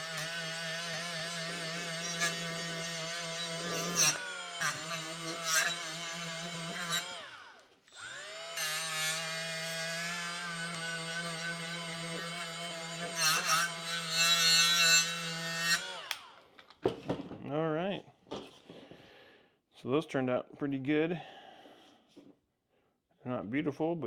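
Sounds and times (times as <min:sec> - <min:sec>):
blade scraping on tool: 0:00.0 - 0:16.3
power tool motor whining: 0:00.0 - 0:16.4.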